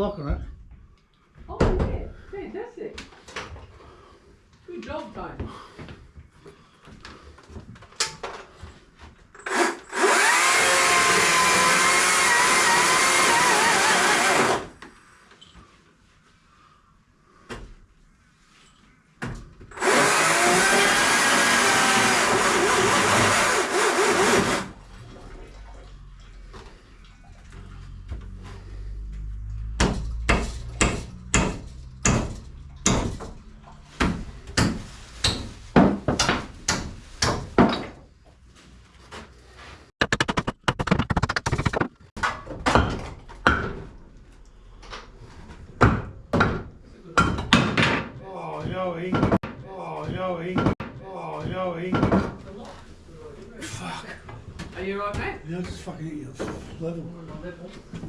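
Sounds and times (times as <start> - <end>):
hammering and prying timber: 9.4 - 14.7, 19.2 - 24.8, 29.7 - 38.0, 40.0 - 44.0, 45.8 - 52.4
power tool running: 9.4 - 14.8, 19.7 - 24.8.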